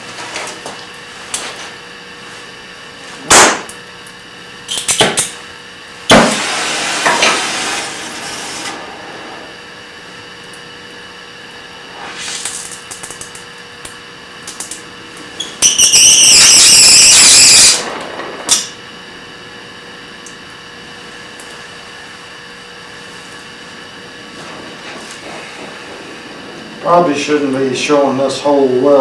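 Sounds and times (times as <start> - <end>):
welding torch hissing: 0.0 - 29.0
sharp pop: 3.3 - 3.7, 6.1 - 6.4.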